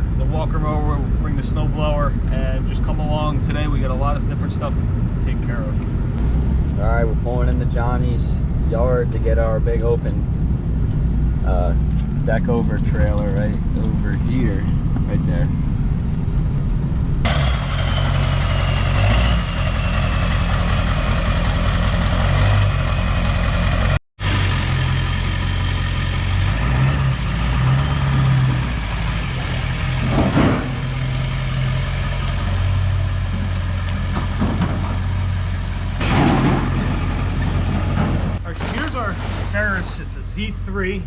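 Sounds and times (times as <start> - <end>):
engine idling: 13.0 - 26.6.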